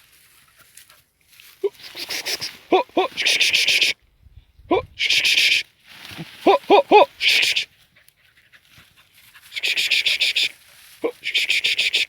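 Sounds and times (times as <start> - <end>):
dog yelping barks: 2.7 - 3.5, 6.4 - 7.6.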